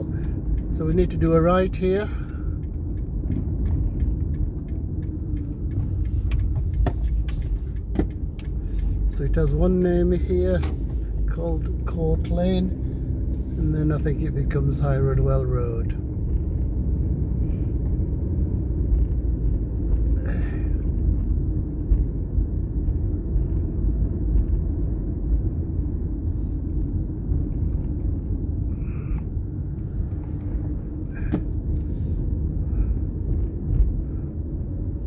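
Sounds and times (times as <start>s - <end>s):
car engine and tyre rumble: 0.0s - 35.0s.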